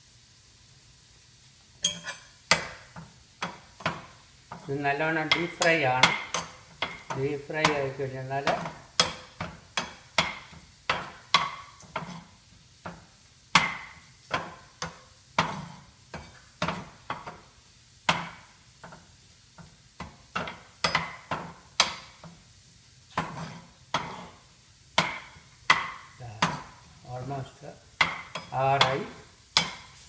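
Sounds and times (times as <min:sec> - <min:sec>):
food deep-frying in oil: 0:00.0 - 0:30.0
metal spoon scraping frying pan: 0:01.8 - 0:02.4, 0:03.4 - 0:12.4, 0:13.6 - 0:17.5, 0:23.1 - 0:26.8.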